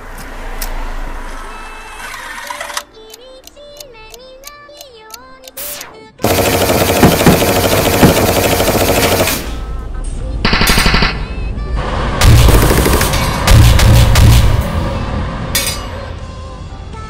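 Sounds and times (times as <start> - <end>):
rapid repeated bangs: 6.2 - 9.6, 12.2 - 14.9.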